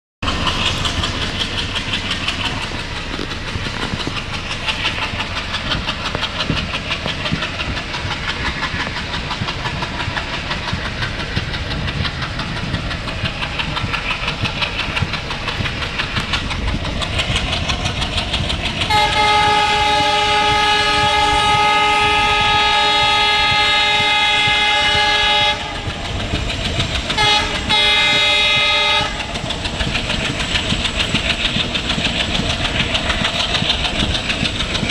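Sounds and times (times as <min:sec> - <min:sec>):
diesel locomotive engine chugging: 0:00.2 - 0:34.9
rail clatter: 0:00.2 - 0:34.9
train horn blasts: 0:18.9 - 0:25.9, 0:27.2 - 0:29.2.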